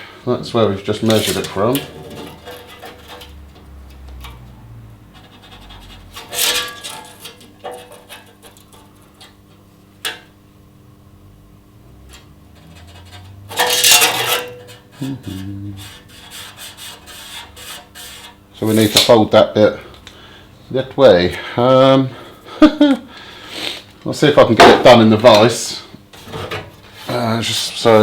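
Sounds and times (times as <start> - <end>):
scraping rattle: 1.0 - 4.5, 5.1 - 9.6, 12.0 - 19.0
metallic clinks and scrapes: 12.1 - 15.4.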